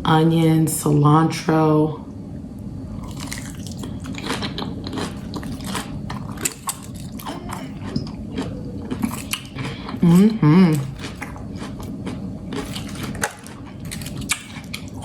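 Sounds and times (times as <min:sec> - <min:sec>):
salad crunching: 0:03.0 - 0:15.0.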